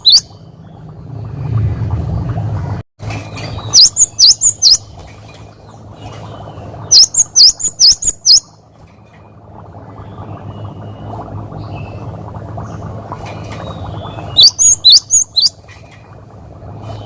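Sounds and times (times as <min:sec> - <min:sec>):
bird singing whistled notes: 0:00.0 - 0:00.4, 0:03.6 - 0:04.8, 0:06.9 - 0:08.5, 0:14.1 - 0:15.5
steady low hum: 0:00.0 - 0:17.0.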